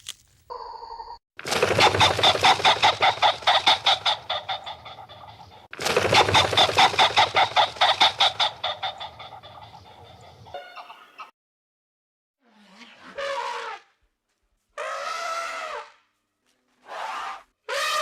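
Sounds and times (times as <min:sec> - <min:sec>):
chicken clucking rapidly: 0:01.5 - 0:11.3.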